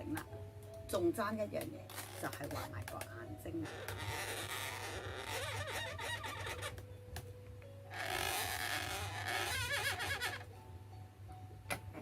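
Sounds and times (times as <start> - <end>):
balloon squeaking and rubbing: 1.9 - 2.8, 3.6 - 6.8, 7.9 - 10.5.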